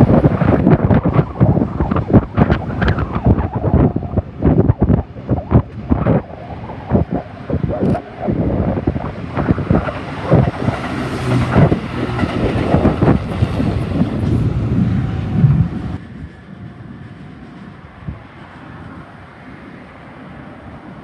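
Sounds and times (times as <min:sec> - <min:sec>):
low train hum: 0:00.0 - 0:21.0
train wheels clattering over track: 0:07.4 - 0:16.0.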